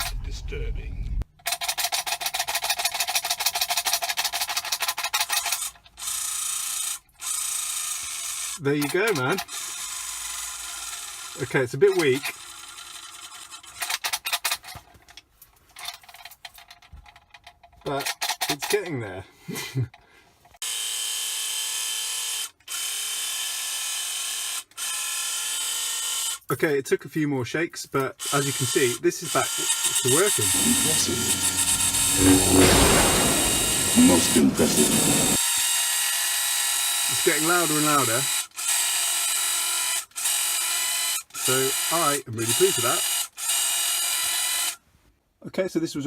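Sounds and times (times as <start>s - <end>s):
toy engine sound effect: 29.9s - 35.4s.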